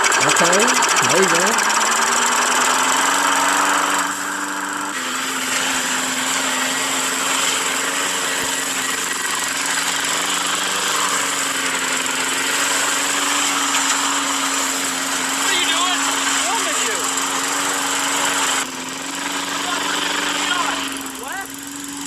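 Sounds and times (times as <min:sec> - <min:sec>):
lawn mower engine droning: 0:00.0 - 0:22.0.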